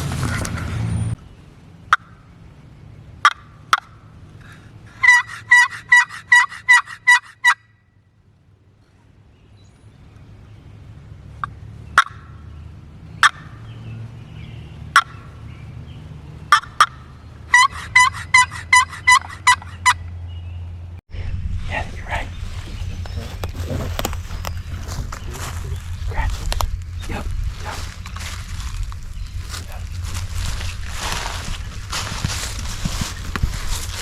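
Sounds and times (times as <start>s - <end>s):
turkey clucks: 1.9s - 2.2s, 3.2s - 7.7s, 11.4s - 12.4s, 13.2s - 13.6s, 14.9s - 15.4s, 16.5s - 20.2s
turkey yelping: 3.2s - 7.7s, 11.4s - 12.4s, 13.2s - 13.7s, 14.9s - 15.4s, 16.5s - 20.1s.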